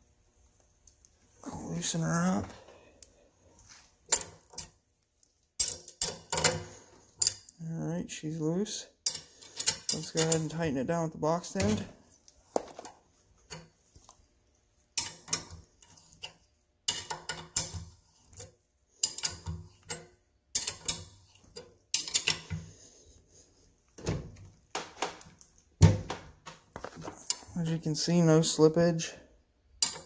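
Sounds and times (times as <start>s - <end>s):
wrench clicking and clanking on nut: 5.6s - 7.6s, 9.0s - 10.6s, 15.0s - 22.5s, 29.8s - 30.0s.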